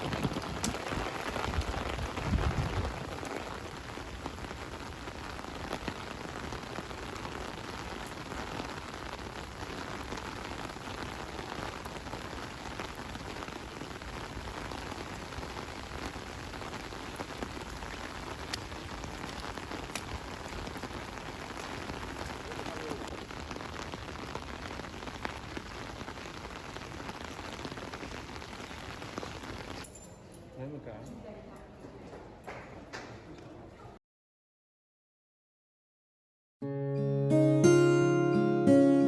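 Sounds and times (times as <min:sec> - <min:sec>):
steady rain falling: 0:00.0 - 0:29.8.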